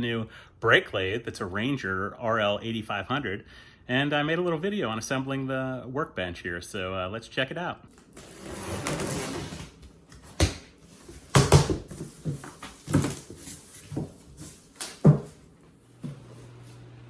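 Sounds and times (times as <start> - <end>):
packing rustling: 8.0 - 15.5
box knocks and thumps: 8.8 - 15.4.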